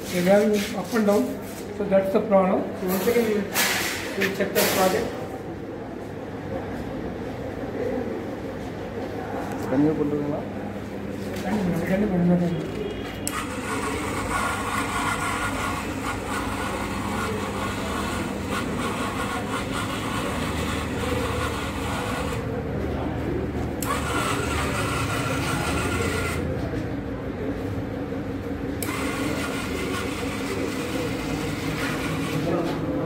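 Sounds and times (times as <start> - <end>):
small gear motors whining: 13.2 - 22.5, 23.8 - 26.5, 28.8 - 32.8.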